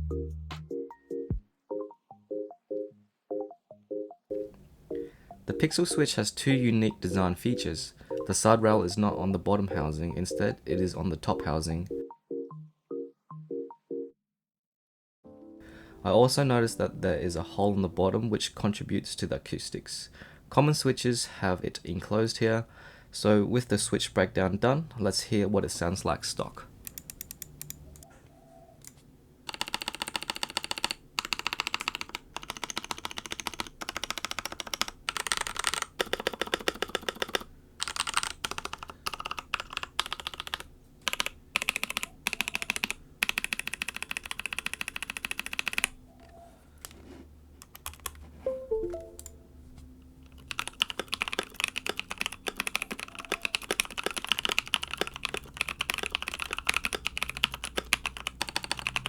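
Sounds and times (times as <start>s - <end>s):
typing on mechanical keyboard: 26.9s - 28.1s, 29.5s - 46.0s, 47.6s - 48.2s, 50.3s - 59.0s.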